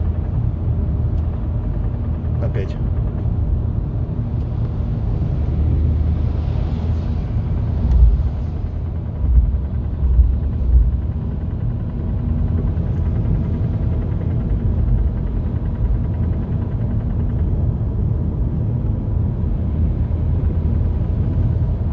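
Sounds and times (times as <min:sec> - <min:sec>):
car engine rumbling: 0:00.0 - 0:21.9
heavy engine knocking thumps: 0:07.9 - 0:12.6.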